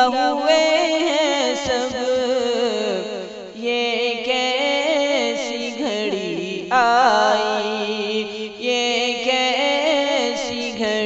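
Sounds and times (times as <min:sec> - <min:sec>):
man singing an elegy: 0:00.0 - 0:11.0.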